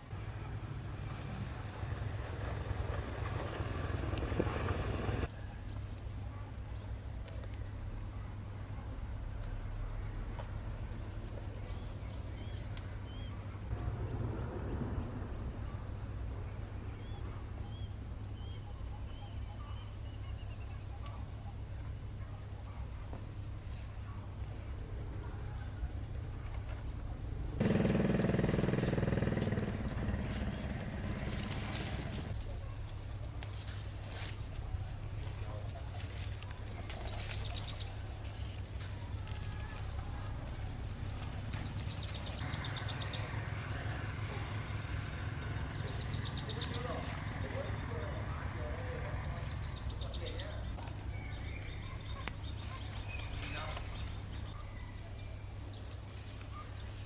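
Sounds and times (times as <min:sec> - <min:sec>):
faint bird chirps: 0:48.6 - 0:57.0.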